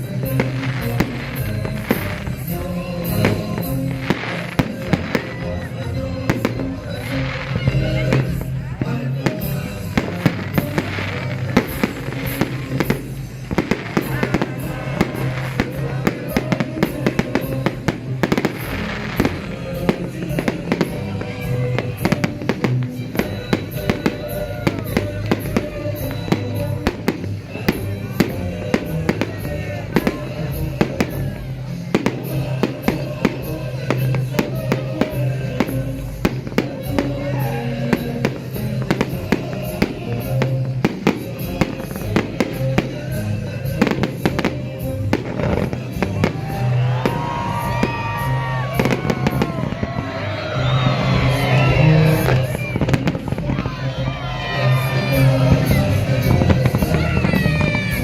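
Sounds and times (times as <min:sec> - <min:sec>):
fireworks and firecrackers banging: 0:00.0 - 0:58.0
music with low bass: 0:00.0 - 0:58.0.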